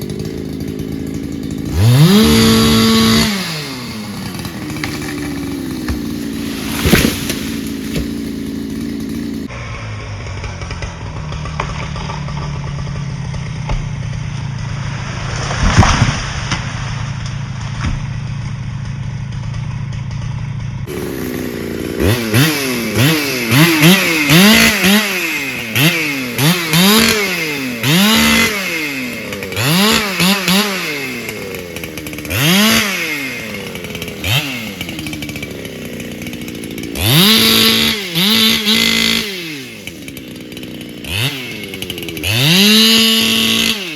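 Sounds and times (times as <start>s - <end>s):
chainsaw engine revving: 0.0s - 43.9s
sharp knock: 15.3s - 16.8s.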